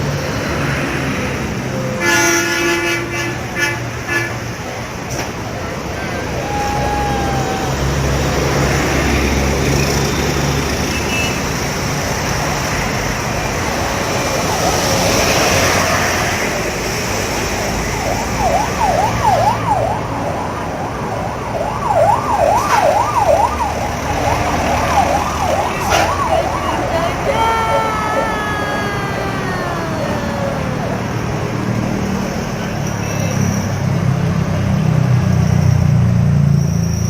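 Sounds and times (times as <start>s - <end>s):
road traffic: 0.0s - 37.0s
siren yelping: 6.0s - 9.0s, 17.3s - 32.0s.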